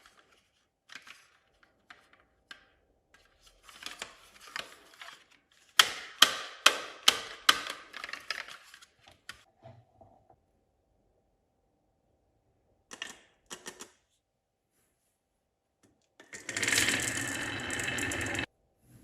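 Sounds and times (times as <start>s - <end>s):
marbles rolling on wooden run: 16.4s - 18.5s.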